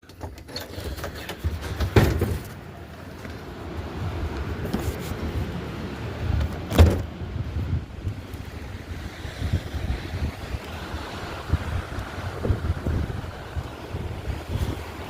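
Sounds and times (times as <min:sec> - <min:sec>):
wind gusts buffeting microphone: 0:03.5 - 0:15.0
loud wind blasts: 0:03.8 - 0:15.0.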